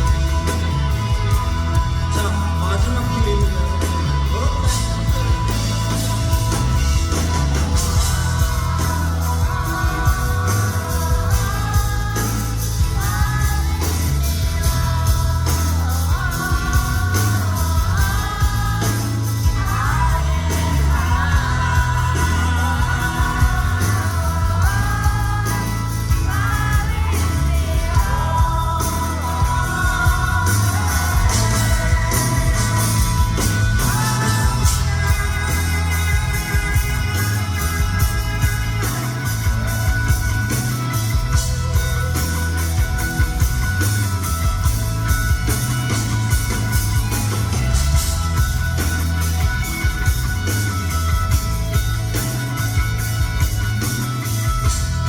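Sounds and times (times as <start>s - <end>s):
man singing: 0.0s - 40.6s
live rock band playing: 0.0s - 55.0s.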